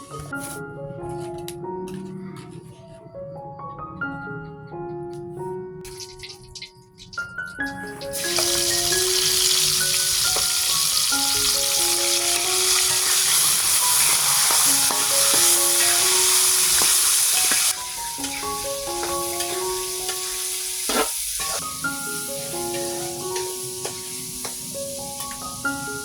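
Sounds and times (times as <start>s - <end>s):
soft mallet music: 0.0s - 13.3s, 14.4s - 20.7s, 21.6s - 26.0s
food sizzling in hot oil: 5.9s - 26.0s.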